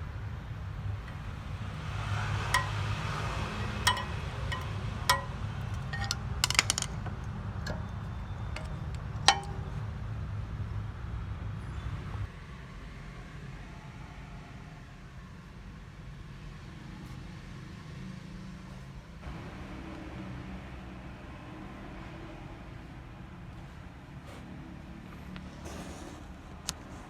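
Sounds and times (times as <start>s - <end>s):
metal tools clinking: 1.1s - 9.8s.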